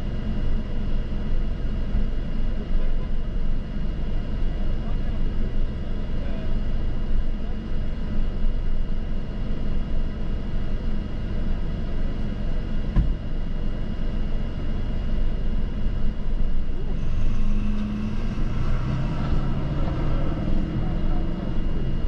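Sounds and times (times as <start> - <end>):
vehicle engine rumble: 0.0 - 22.0
thump: 12.9 - 13.2
road or wind noise: 14.8 - 22.0.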